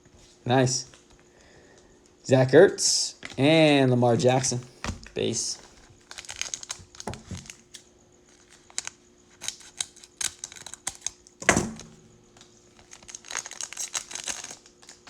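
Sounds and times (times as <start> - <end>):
wrapper crinkling: 4.2 - 15.0.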